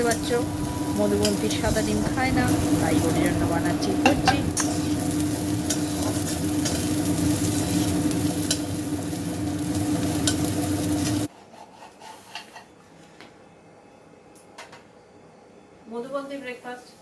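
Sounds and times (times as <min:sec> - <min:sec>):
eggs sizzling in a pan: 0:00.0 - 0:11.3
low hum: 0:00.0 - 0:11.3.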